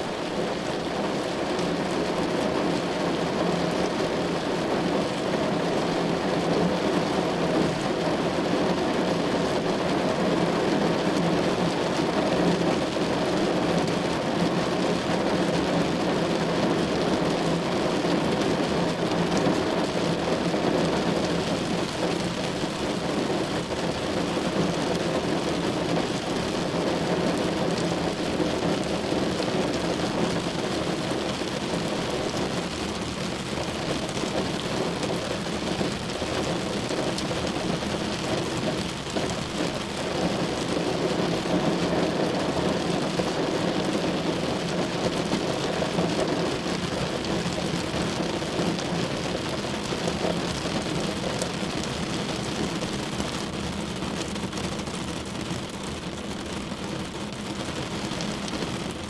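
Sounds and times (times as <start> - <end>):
heavy rain drumming on car: 0.0 - 59.0.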